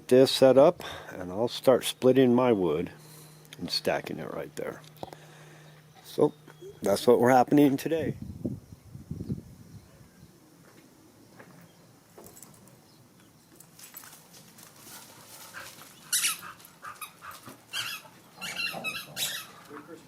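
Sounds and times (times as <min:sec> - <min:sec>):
dog yipping: 0:16.0 - 0:19.8
dog whimpering: 0:16.1 - 0:20.0.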